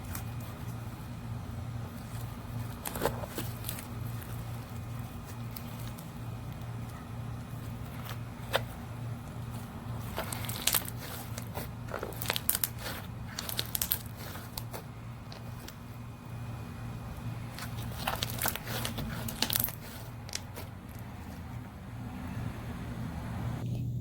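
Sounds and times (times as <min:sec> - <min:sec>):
steady low hum: 0:00.0 - 0:24.0
slime crackling and popping: 0:09.3 - 0:15.8, 0:17.4 - 0:21.0.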